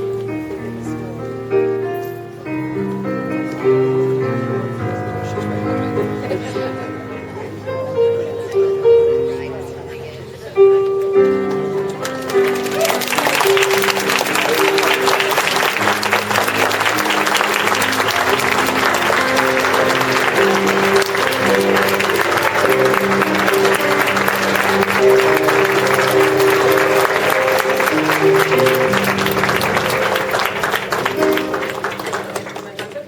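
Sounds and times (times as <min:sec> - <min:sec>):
instrumental music slow chords: 0:00.0 - 0:32.8
congregation applauding: 0:11.8 - 0:33.0.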